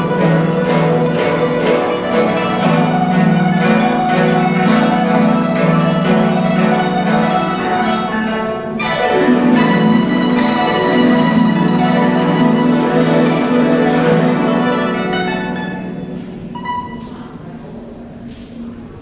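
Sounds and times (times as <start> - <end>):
plucked zither notes: 0.0 - 17.9.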